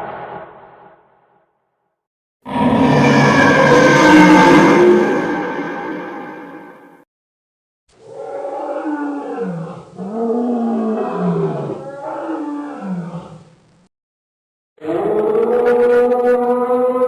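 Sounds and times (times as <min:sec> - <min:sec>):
deep creature roars: 0:02.5 - 0:06.9, 0:08.0 - 0:13.4, 0:14.8 - 0:17.0.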